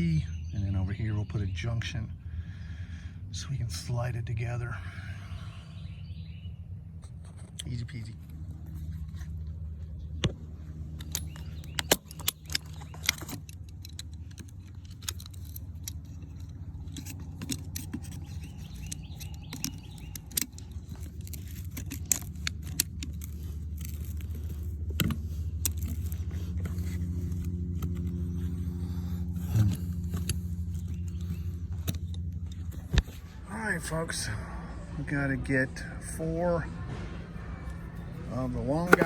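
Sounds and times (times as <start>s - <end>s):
vehicle engine humming: 0.0s - 39.0s
metallic clicks and jingles: 10.8s - 33.2s.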